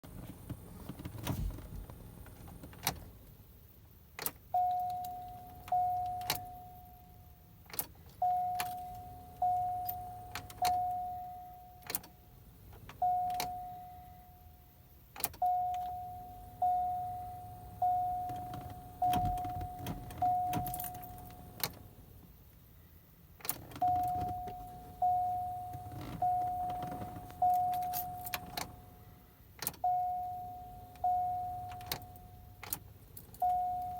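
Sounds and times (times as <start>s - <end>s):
car warning chime dinging: 4.4s - 22.2s, 23.6s - 33.9s
keys jangling: 18.3s - 21.8s.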